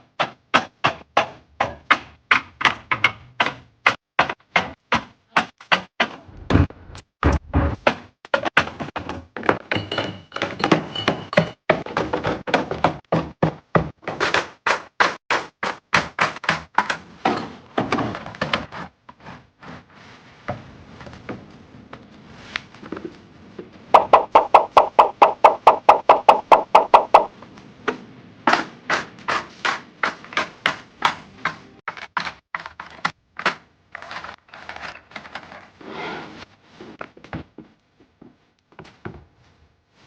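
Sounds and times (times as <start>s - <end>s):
food containers knocking and clicking: 7.3s - 15.0s, 24.0s - 27.3s
fast run of sharp knocks: 23.9s - 27.3s.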